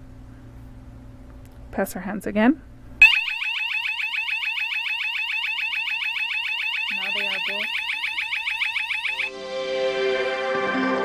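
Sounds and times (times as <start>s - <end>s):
electronic warbling alarm chirp: 3.0s - 9.3s.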